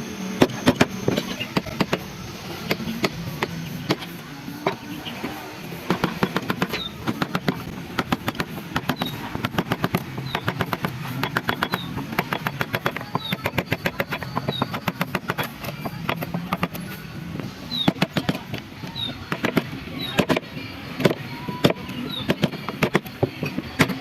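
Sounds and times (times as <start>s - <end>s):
mallet striking chisel into wood: 5.9s - 16.8s.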